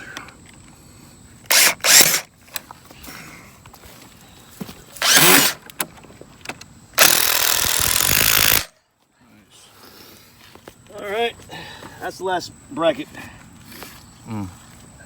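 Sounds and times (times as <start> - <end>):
power drill driving screws: 1.5 - 2.3, 5.0 - 5.6, 7.0 - 8.7.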